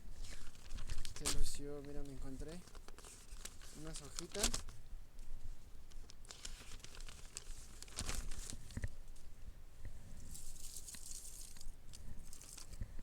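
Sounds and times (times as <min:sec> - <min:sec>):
paper crinkling and tearing: 0:00.2 - 0:04.8, 0:05.9 - 0:08.9, 0:10.3 - 0:12.8.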